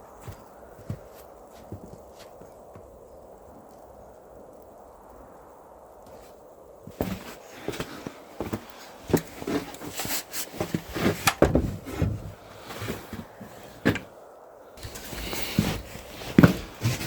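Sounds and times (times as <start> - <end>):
door being handled: 11.0 - 12.3
knocks and thuds: 11.2 - 12.4.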